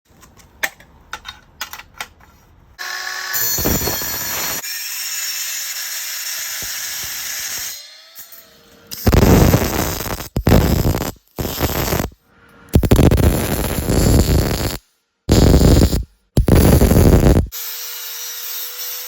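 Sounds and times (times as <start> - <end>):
power tool running: 2.8 - 8.4.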